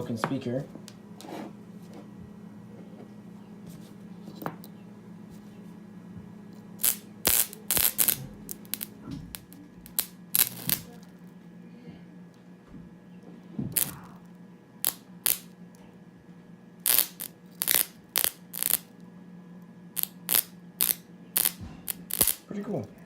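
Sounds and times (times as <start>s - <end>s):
transformer humming: 4.7s - 12.0s, 12.6s - 16.0s, 16.7s - 19.0s, 19.8s - 23.0s
crackling electric sparks: 6.8s - 11.1s, 13.8s - 14.2s, 14.8s - 15.5s, 16.8s - 19.0s, 20.0s - 22.5s.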